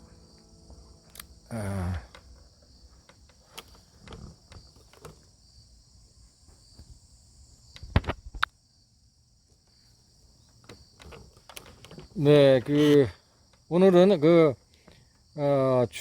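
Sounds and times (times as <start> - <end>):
insects chirring: 0.0 - 16.0.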